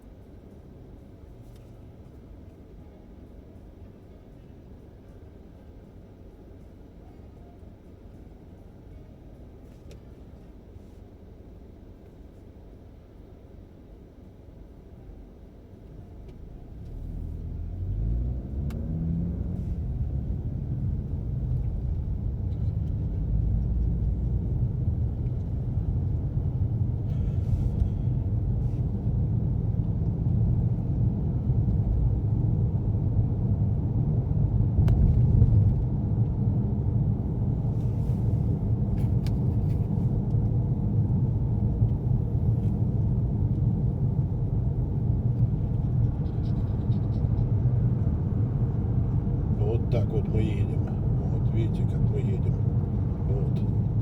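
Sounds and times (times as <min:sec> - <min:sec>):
engine and road noise rumble: 0:00.0 - 0:54.0
car engine revving: 0:16.4 - 0:33.2.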